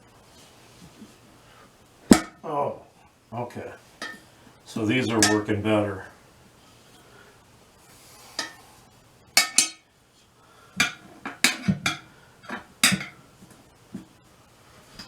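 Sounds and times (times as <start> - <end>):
tire spoons clinking on wheel rim: 4.0 - 4.3, 5.1 - 5.6, 9.4 - 9.9, 10.8 - 13.2.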